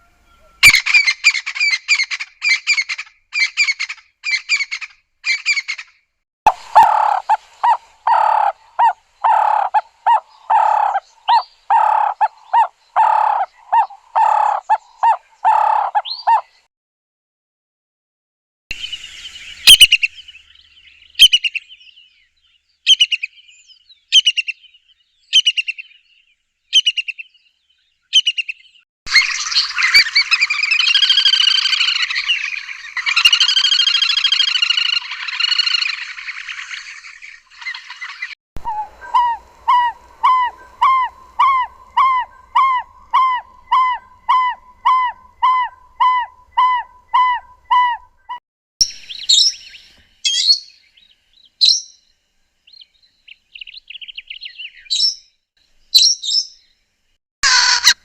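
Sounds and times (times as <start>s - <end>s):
rich dense birdsong: 6.7s - 16.7s, 18.7s - 57.2s
even run of pitched bird notes: 29.1s - 50.6s.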